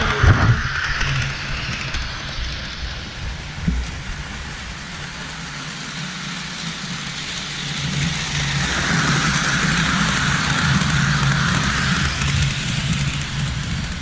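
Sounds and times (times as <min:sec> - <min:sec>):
toy train running on track: 0:00.0 - 0:14.0.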